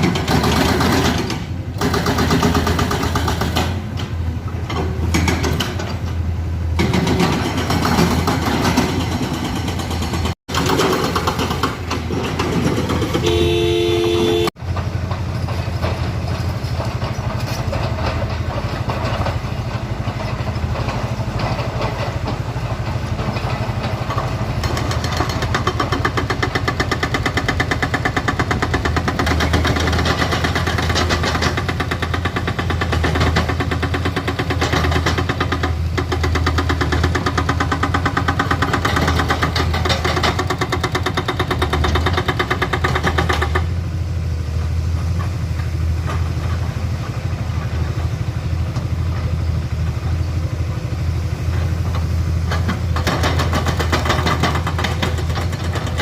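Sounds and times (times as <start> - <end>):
excavator diesel engine running: 0.0 - 56.0
horn sounding: 13.1 - 14.6.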